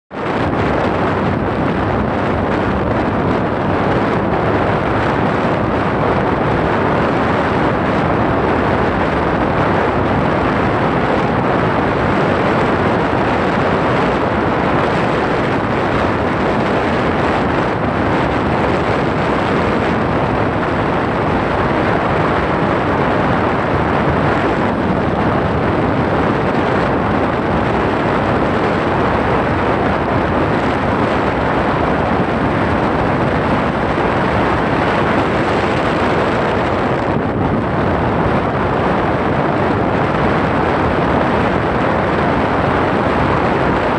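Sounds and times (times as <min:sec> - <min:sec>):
loud rushing noise: 0:00.1 - 0:43.9.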